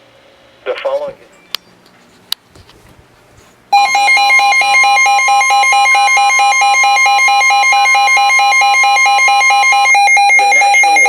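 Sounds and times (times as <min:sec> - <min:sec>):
faint radio hiss: 0:00.0 - 0:01.4
steady warning alarm tone: 0:03.7 - 0:11.0
pulsing receiver alert: 0:03.8 - 0:11.0.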